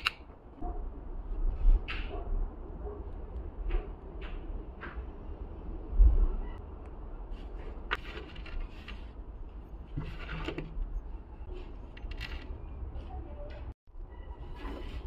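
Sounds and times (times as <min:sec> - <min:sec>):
objects clicking and scraping: 0:07.4 - 0:12.8.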